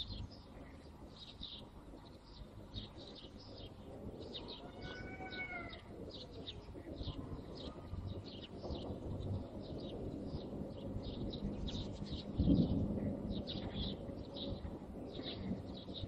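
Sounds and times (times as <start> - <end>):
low background rumble: 0.0 - 16.0
small birds chirping: 0.0 - 16.0
rising and falling bird call: 4.2 - 8.8.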